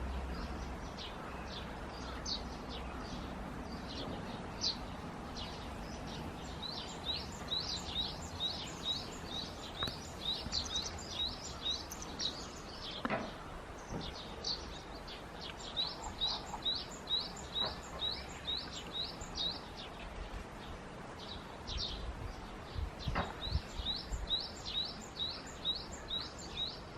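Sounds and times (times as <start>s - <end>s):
small bird chirping: 3.7s - 13.1s.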